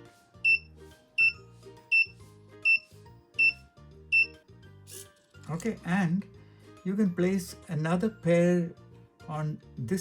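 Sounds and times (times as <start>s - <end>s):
high beeping notes: 1.2s - 2.1s.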